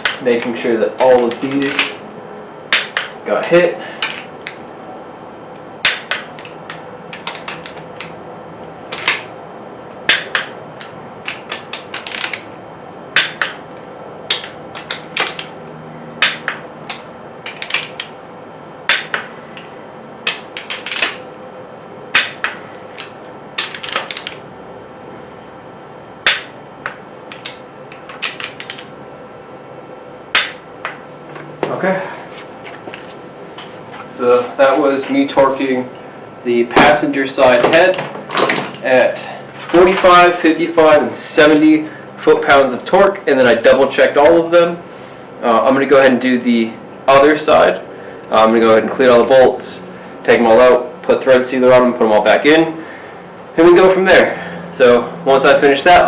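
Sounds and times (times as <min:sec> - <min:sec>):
torque wrench clicking: 0:10.1 - 0:12.5.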